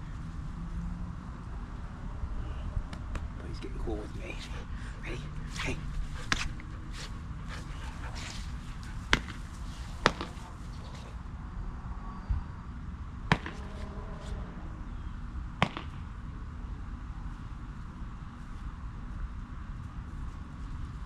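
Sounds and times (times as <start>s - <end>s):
low background noise: 0.0s - 21.0s
sharp snaps: 2.9s - 3.4s.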